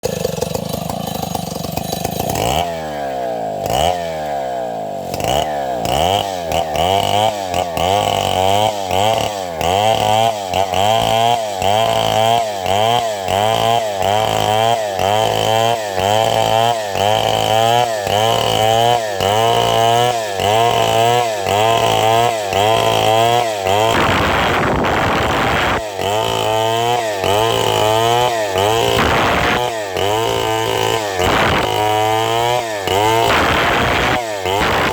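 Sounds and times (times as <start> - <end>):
chainsaw cutting wood: 0.0 - 34.9.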